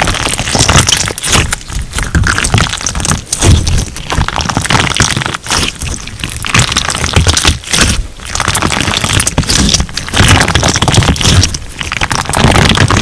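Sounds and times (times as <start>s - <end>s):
slime crackling and popping: 0.0s - 13.0s.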